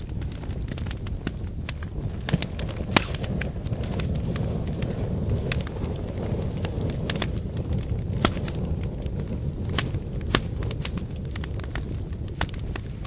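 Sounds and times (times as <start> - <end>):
fire crackling and popping: 0.0 - 13.0
low rumble of flames: 0.0 - 13.0.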